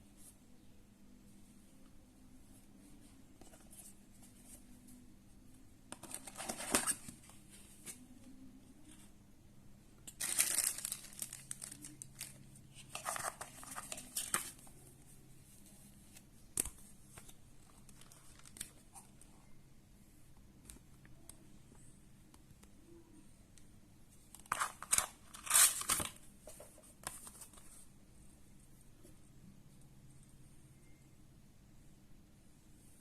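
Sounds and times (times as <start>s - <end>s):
packaging crinkling and tearing: 10.1s - 14.6s, 24.4s - 26.2s.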